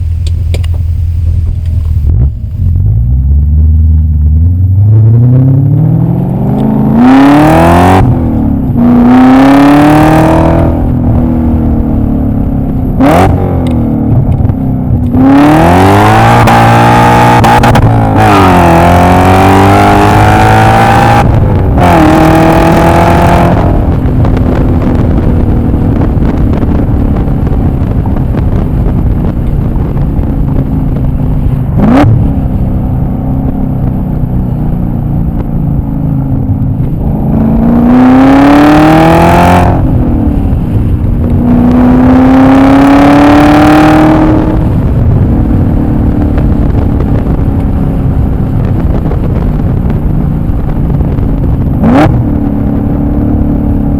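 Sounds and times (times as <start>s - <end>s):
car engine revving hard: 4.5s - 12.3s, 12.9s - 29.0s, 30.9s - 33.6s, 36.8s - 47.7s, 51.0s - 53.9s.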